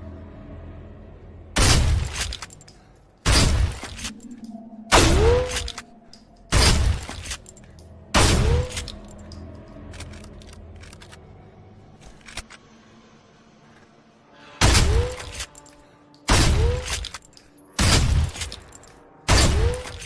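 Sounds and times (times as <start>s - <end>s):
shotgun shots: 1.6s - 2.4s, 3.3s - 4.1s, 4.9s - 5.8s, 8.2s - 8.9s, 14.6s - 15.4s, 16.3s - 17.2s.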